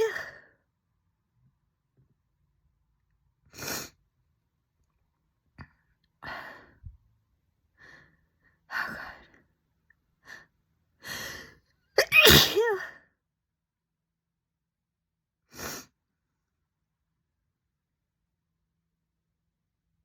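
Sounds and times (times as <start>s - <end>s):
woman gasping breaths: 10.3s - 11.6s
woman sneezing: 12.0s - 12.9s.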